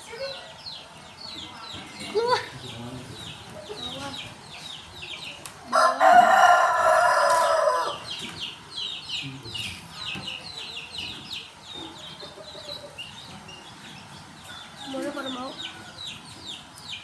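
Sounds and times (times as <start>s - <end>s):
rooster crowing: 5.7s - 8.1s.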